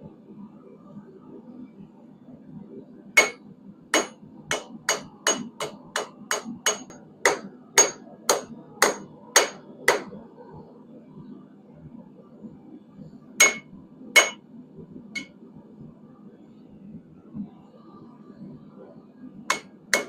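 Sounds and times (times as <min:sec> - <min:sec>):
hammer ringing on anvil: 0:03.2 - 0:03.4, 0:04.0 - 0:10.1, 0:13.4 - 0:14.4, 0:19.5 - 0:20.0.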